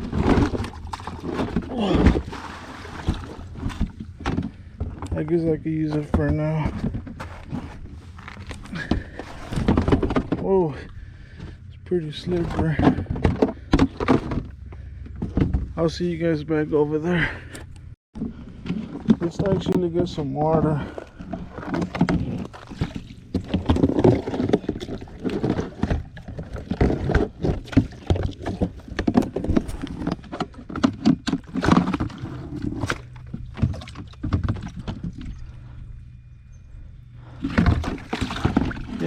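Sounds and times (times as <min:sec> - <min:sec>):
knocks and bumps: 0:00.0 - 0:11.6, 0:12.2 - 0:16.0
water splashing and sloshing: 0:00.0 - 0:15.9, 0:18.2 - 0:39.0.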